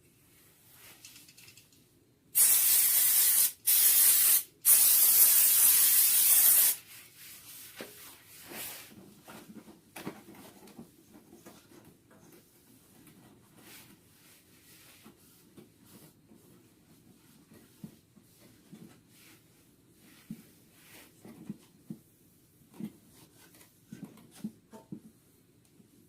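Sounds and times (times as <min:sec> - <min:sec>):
aerosol spray can hissing: 0:02.4 - 0:06.8.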